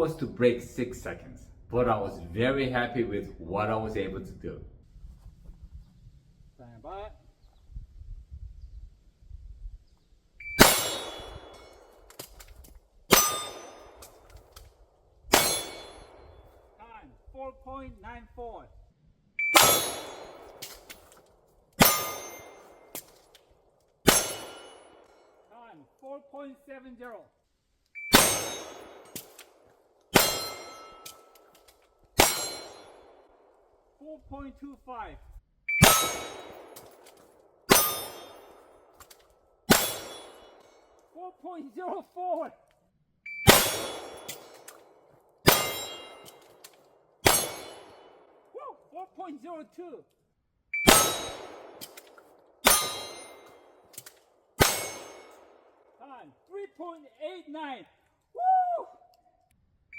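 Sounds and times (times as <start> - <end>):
steel targets ringing: 10.6 - 11.9, 13.1 - 14.0, 15.3 - 16.4, 19.5 - 20.6, 21.8 - 23.0, 24.1 - 25.0, 28.1 - 29.2, 30.2 - 31.4, 32.2 - 33.1, 35.8 - 36.8, 37.7 - 38.6, 39.7 - 40.7, 43.4 - 44.7, 45.5 - 46.6, 47.3 - 48.1, 50.8 - 51.8, 52.6 - 53.6, 54.6 - 55.5
pistol shots echoing: 10.6 - 12.1, 13.1 - 14.1, 15.3 - 16.5, 19.4 - 20.9, 21.8 - 23.1, 24.0 - 25.4, 28.1 - 31.3, 32.2 - 33.5, 35.8 - 37.1, 39.7 - 40.6, 43.5 - 44.9, 45.5 - 46.6, 47.2 - 48.5, 50.8 - 53.9, 54.6 - 55.9
shot timer beep: 19.4 - 19.8, 35.7 - 36.0
short high beep: 35.7 - 36.0.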